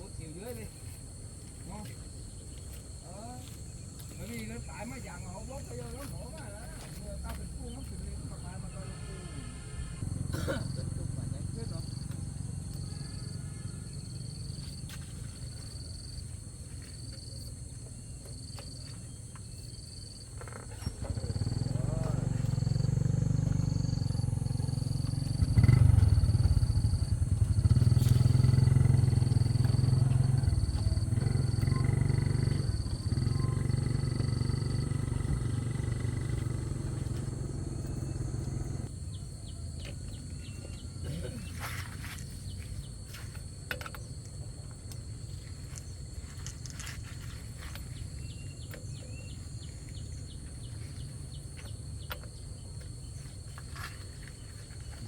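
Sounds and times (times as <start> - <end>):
low mechanical rumble: 4.2 - 14.4, 20.8 - 41.4.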